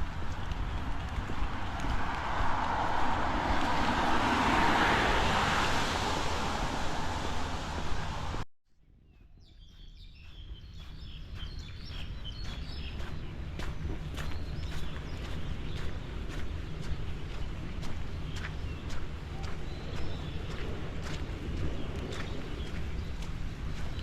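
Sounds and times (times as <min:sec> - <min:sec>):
walking footsteps: 0:00.0 - 0:04.3, 0:09.2 - 0:24.0
loud outdoor rushing noise: 0:00.0 - 0:08.4
birds chirping: 0:08.9 - 0:24.0.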